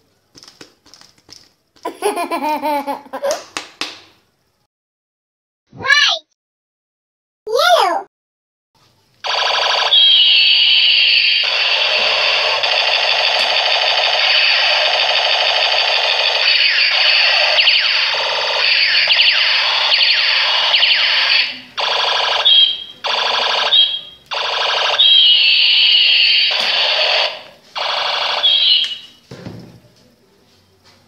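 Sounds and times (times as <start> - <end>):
toy gun electronic siren buzz: 9.3 - 29.2.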